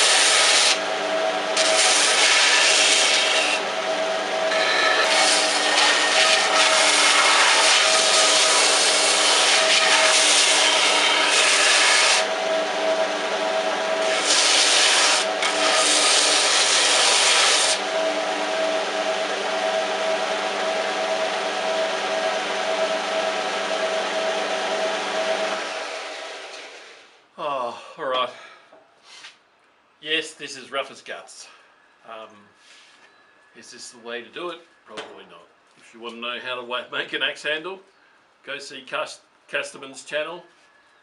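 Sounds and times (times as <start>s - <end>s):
wooden handle sanding: 0.0s - 0.8s, 1.6s - 3.6s, 4.5s - 12.3s, 14.0s - 17.8s
electric sander running: 0.0s - 27.0s.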